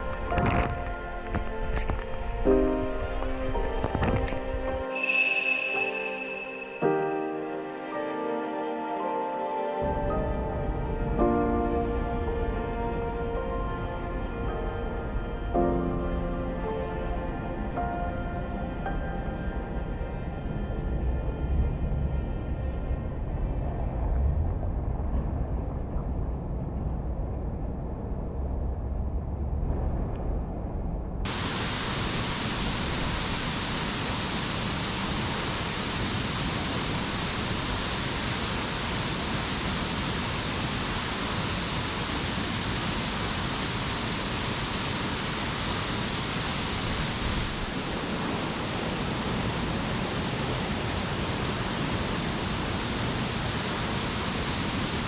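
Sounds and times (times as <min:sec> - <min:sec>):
waterfall rushing: 0:00.0 - 0:05.0, 0:31.3 - 0:55.0
muffled low rumble: 0:09.8 - 0:34.0.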